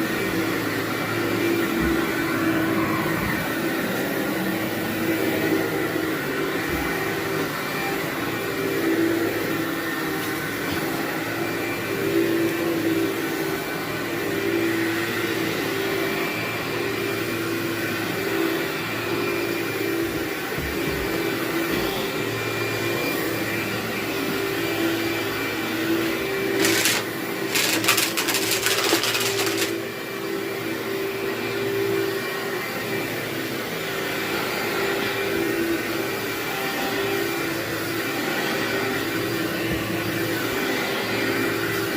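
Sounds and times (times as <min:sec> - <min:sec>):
vacuum cleaner running on carpet: 0:00.0 - 0:41.9
grit crunching in vacuum: 0:26.6 - 0:29.8.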